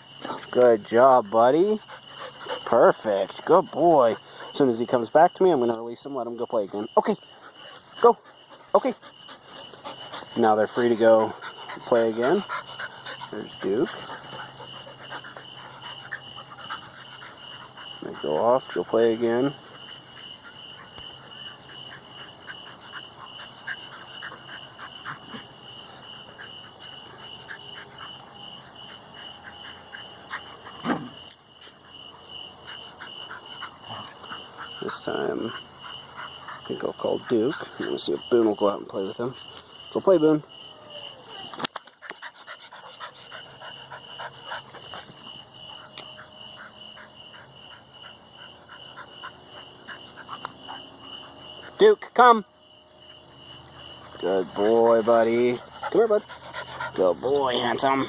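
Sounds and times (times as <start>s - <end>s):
chorus of calling animals: 0.0s - 58.0s
frogs croaking: 0.0s - 58.0s.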